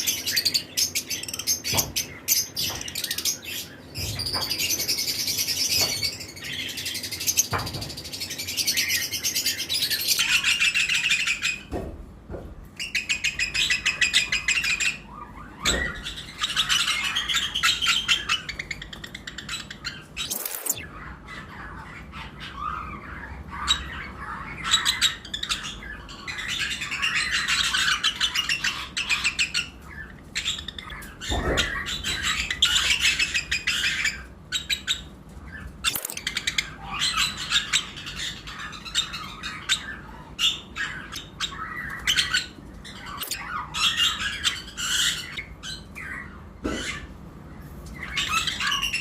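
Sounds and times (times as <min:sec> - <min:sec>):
lovebirds chirping: 0:12.8 - 0:49.0.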